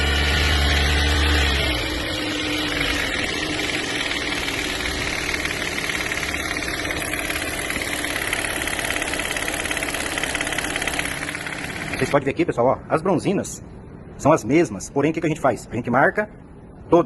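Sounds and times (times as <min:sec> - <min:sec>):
engine knocking: 0:00.0 - 0:12.1.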